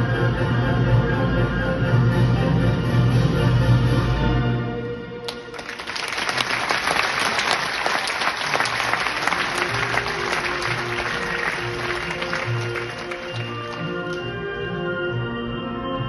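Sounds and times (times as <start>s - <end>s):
orchestral music: 0.0s - 6.7s, 7.4s - 16.0s
audience applauding: 5.3s - 14.3s.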